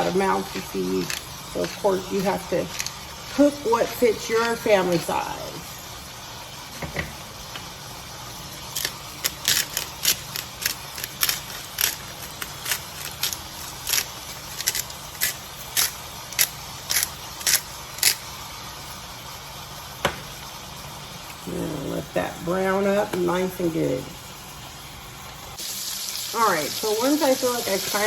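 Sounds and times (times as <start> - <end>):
meat sizzling in a skillet: 0.0 - 6.7, 24.2 - 28.0.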